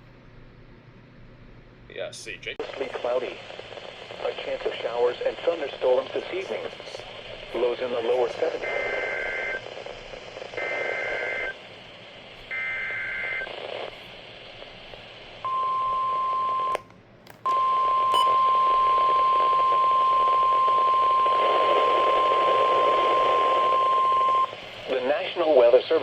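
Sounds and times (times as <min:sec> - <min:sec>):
click: 0:16.7 - 0:18.3.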